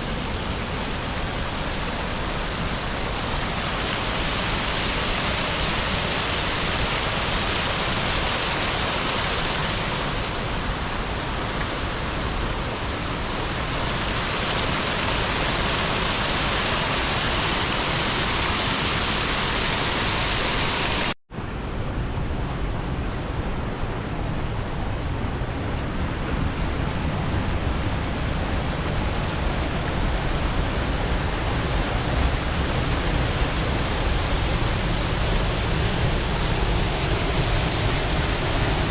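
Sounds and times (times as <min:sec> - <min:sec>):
spring water gushing: 0:00.0 - 0:21.2, 0:27.4 - 0:38.9.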